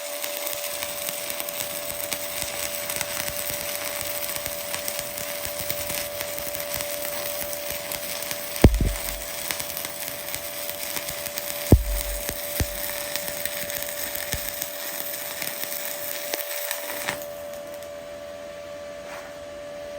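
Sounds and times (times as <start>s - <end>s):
welding arc crackling: 0.0s - 18.0s
sharp knock: 8.6s - 9.3s, 11.7s - 13.0s.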